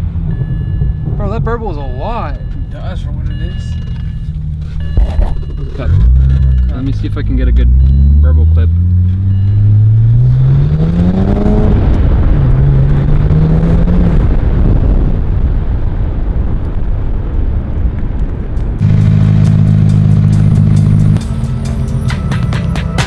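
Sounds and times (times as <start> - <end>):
car engine revving: 0.0 - 15.9, 18.8 - 23.0
exhaust burbling and crackling: 0.0 - 23.0
low drone with regular ticks: 0.1 - 9.6.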